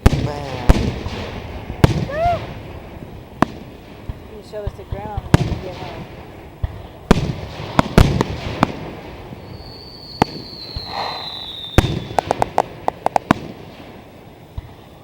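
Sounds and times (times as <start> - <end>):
firework shells banging: 0.0 - 14.0
crackling firework reports: 0.0 - 15.0
high sliding whistle: 9.5 - 12.2.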